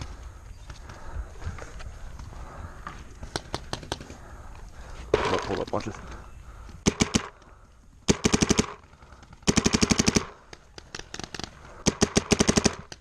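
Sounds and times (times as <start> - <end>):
paintball marker rapid shots: 3.3 - 4.2, 6.8 - 7.4, 8.1 - 13.0.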